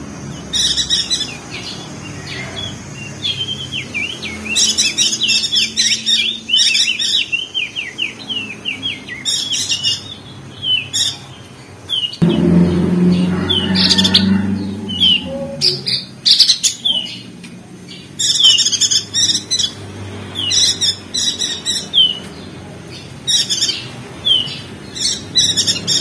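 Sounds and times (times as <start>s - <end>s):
harsh scratchy bird calls: 0.0s - 26.0s
bird chattering chirps: 0.2s - 19.8s, 20.4s - 26.0s
low hum: 12.2s - 16.3s.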